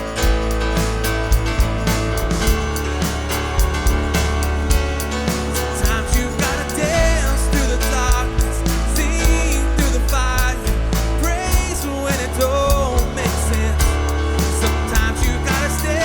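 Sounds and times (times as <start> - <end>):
bass guitar: 0.0 - 16.0
drum kit beat: 0.0 - 16.0
piano: 0.0 - 16.0
person singing: 5.0 - 16.0.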